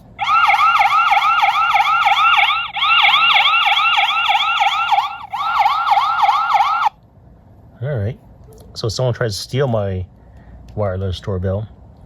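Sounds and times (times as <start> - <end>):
electronic warbling alarm: 0.2 - 6.9.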